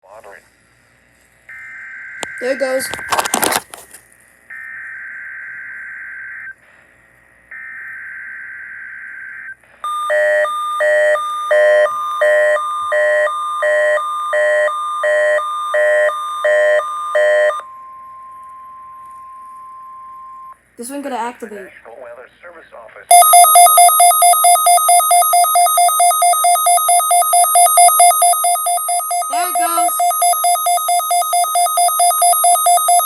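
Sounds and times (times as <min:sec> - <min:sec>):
steady warning tone: 0:09.0 - 0:20.6, 0:23.1 - 0:33.0
electronic chime beeps: 0:23.1 - 0:33.0
warbling digital header tones: 0:23.1 - 0:33.0.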